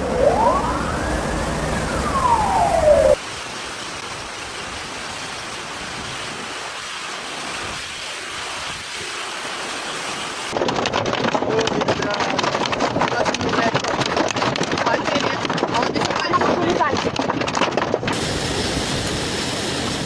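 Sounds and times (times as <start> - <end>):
wailing siren: 0.0 - 3.2
heavy storm downpour: 0.0 - 16.7, 18.1 - 20.0.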